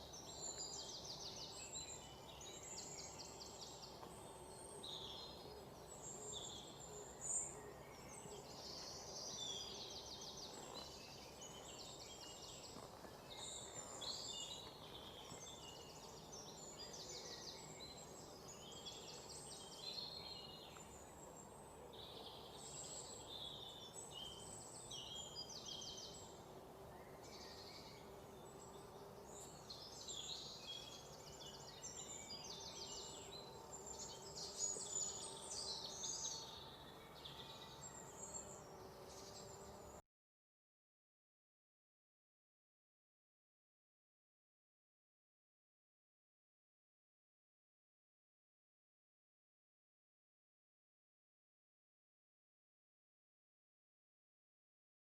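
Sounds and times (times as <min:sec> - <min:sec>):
small birds chirping: 0:00.0 - 0:40.0.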